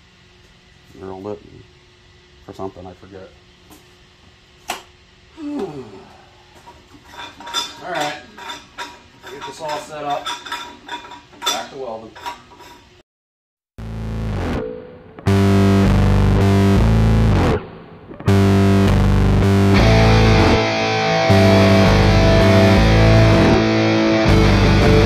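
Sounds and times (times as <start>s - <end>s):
distorted electric guitar rock: 13.8s - 25.0s.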